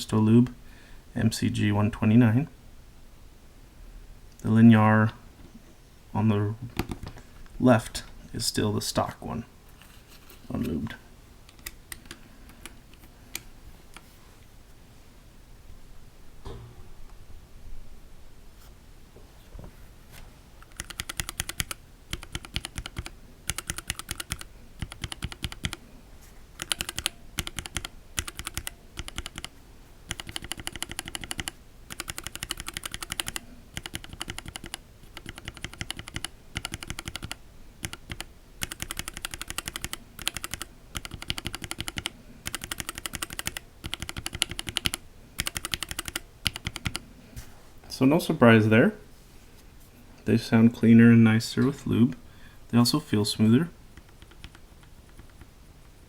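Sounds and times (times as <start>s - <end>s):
mechanical keyboard switches clacking: 26.6s - 29.5s, 30.1s - 47.0s.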